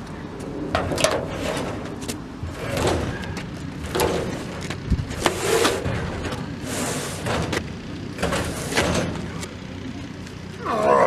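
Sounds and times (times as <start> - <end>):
steel tool box scraping: 1.0 - 7.6, 8.2 - 9.4.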